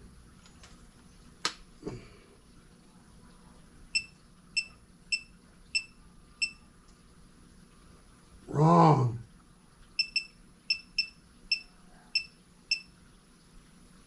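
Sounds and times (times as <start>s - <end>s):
short high-pitched beeps: 4.0s - 6.7s, 10.0s - 12.9s.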